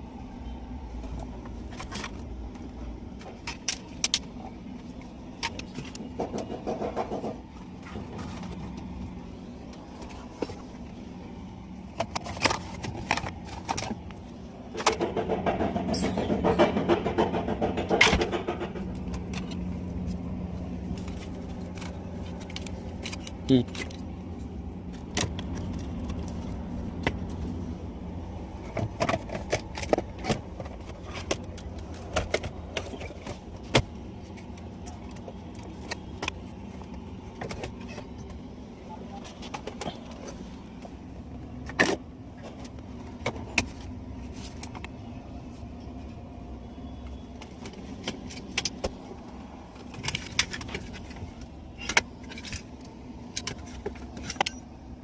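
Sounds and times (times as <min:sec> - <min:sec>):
steady low hum: 0:00.0 - 0:55.0
metal tools clinking: 0:54.2 - 0:54.7.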